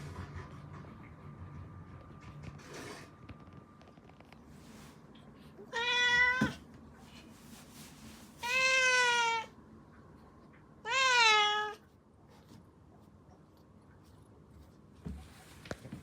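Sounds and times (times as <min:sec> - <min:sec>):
cat meowing: 0:05.6 - 0:06.6, 0:08.4 - 0:09.5, 0:10.8 - 0:11.8.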